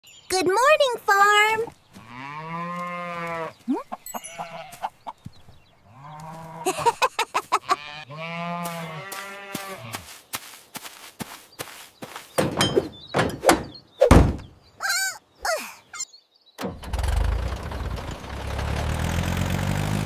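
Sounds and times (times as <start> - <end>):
farm animals long calls: 1.9 - 5.2, 5.8 - 10.1.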